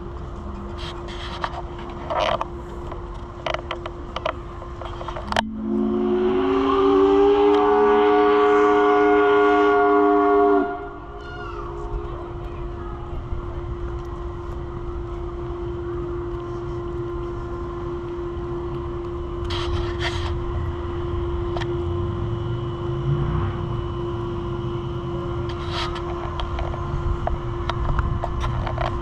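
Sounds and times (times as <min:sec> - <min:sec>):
low rumble: 0:00.0 - 0:17.8
steady mechanical drone: 0:00.0 - 0:29.0.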